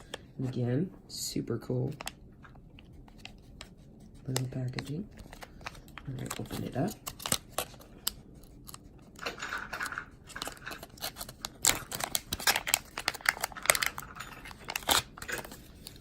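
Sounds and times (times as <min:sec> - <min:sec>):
packaging rustling and tearing: 0:04.3 - 0:16.0.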